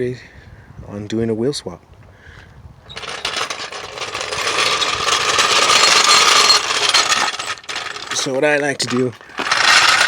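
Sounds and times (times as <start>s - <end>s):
floor jack wheels clattering: 2.9s - 10.0s.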